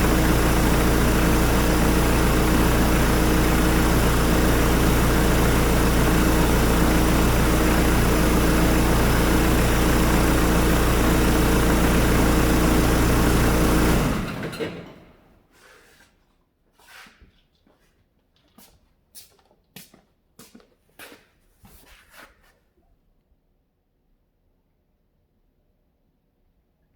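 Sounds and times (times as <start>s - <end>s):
diesel engine idling: 0.0s - 14.9s.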